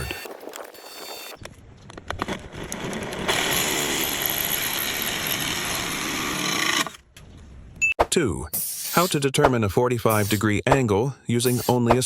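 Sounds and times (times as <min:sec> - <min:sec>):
power drill cutting wood: 0:03.3 - 0:07.0.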